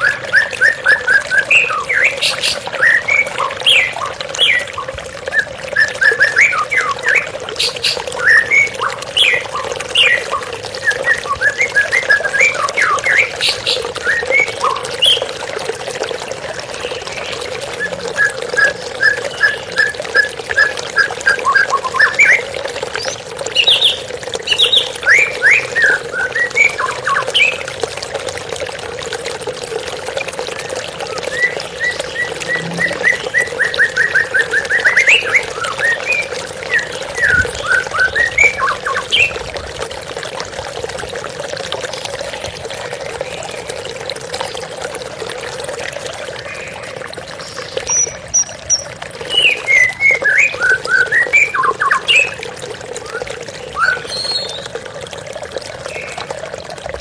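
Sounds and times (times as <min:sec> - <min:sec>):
bird singing whistled notes: 0:00.0 - 0:15.3, 0:31.1 - 0:39.4, 0:47.9 - 0:52.4
flowing water: 0:00.0 - 0:57.0.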